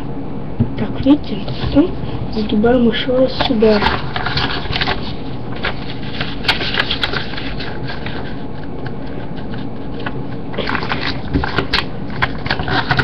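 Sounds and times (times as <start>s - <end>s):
paper being folded and crinkling: 3.3s - 13.0s.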